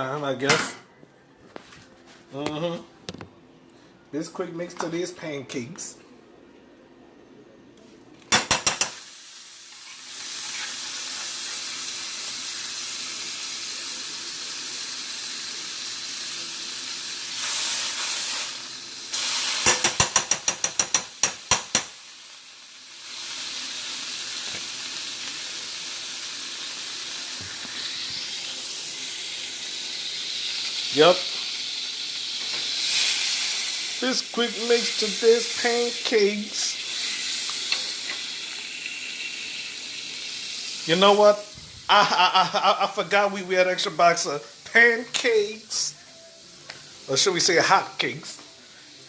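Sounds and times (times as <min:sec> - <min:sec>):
batter sizzling in a pan: 0:08.3 - 0:49.0.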